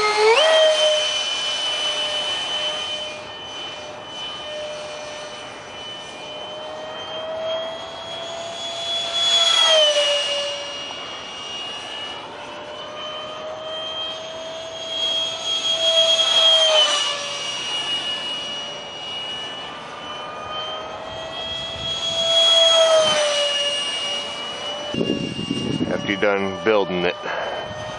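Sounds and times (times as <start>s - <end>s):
electric jet fan whining: 0.0s - 27.9s.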